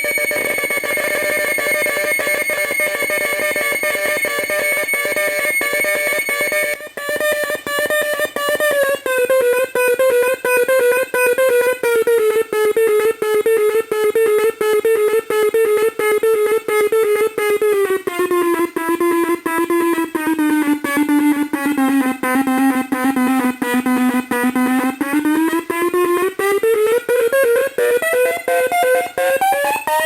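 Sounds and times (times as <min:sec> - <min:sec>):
synthesiser buzzy drone: 0:00.0 - 0:30.0.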